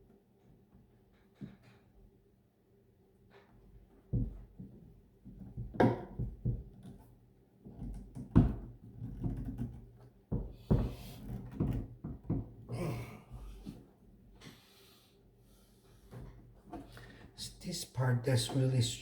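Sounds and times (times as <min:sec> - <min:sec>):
plastic cover knocks and thumps: 0:05.3 - 0:07.0, 0:07.8 - 0:12.7.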